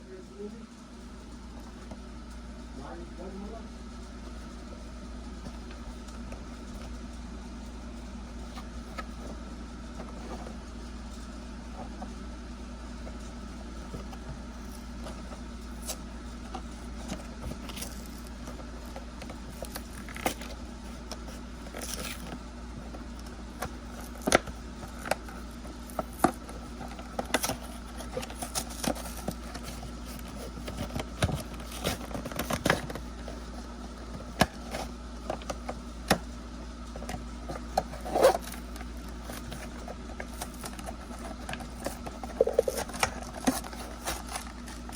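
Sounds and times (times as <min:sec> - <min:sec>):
packaging clicks and crinkles: 0:14.0 - 0:44.9.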